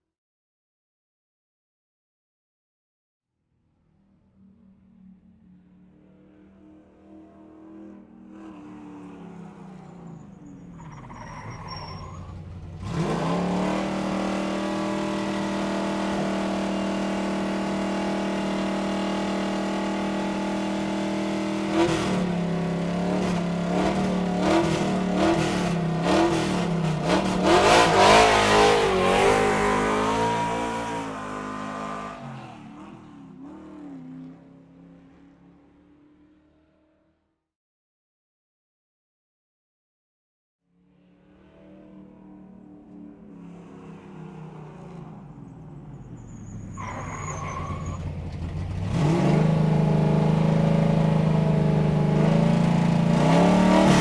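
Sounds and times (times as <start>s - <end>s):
car engine revving: 12.3s - 34.1s, 47.9s - 54.0s.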